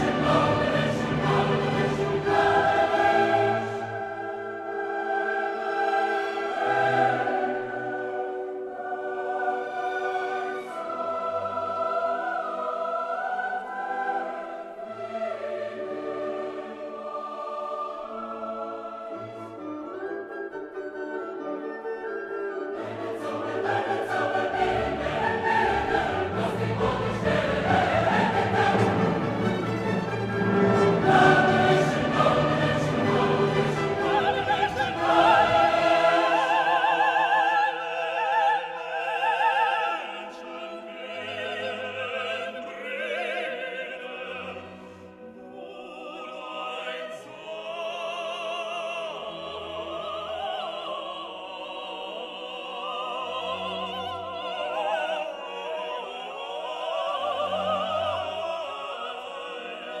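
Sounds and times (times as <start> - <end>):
orchestra playing: 0.0 - 13.0, 13.7 - 47.7
operatic voices singing: 0.0 - 20.2, 22.7 - 60.0.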